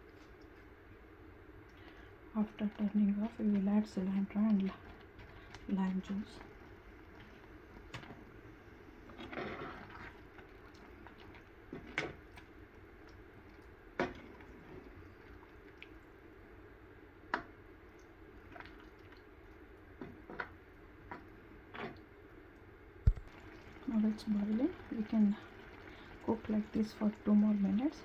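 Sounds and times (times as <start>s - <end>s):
thick mash bubbling in a pan: 0.0s - 28.0s.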